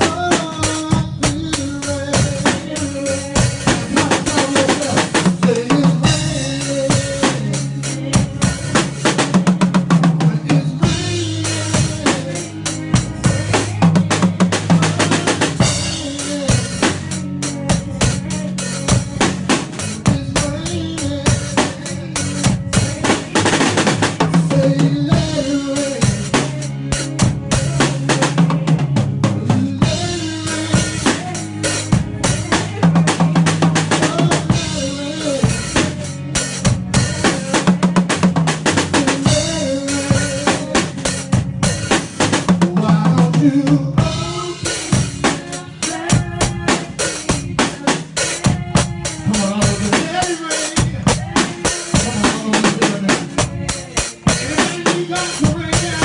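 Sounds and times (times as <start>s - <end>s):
drum kit groove: 0.0s - 56.0s
sustained bass and keyboard: 0.0s - 56.0s.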